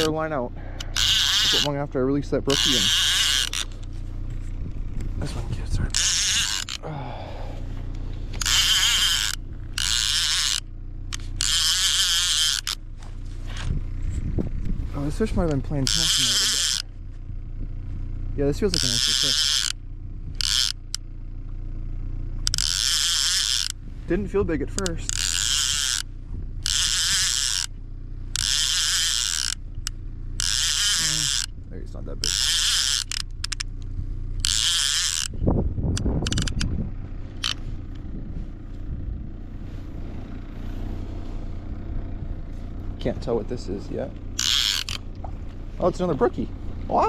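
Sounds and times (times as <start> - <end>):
fishing reel buzzing: 0.0 - 1.8, 2.5 - 3.9, 5.9 - 7.2, 8.3 - 12.8, 15.8 - 16.9, 18.7 - 21.0, 22.4 - 23.8, 24.7 - 31.6, 32.2 - 33.7, 34.3 - 35.4, 36.0 - 36.7, 37.4 - 37.7, 44.4 - 45.2
steady low hum: 0.0 - 47.0.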